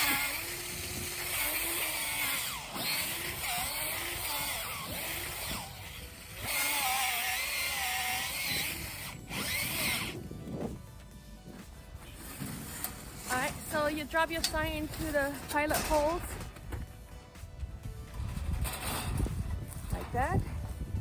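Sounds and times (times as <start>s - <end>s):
cordless drill boring into ground: 0.0s - 10.8s.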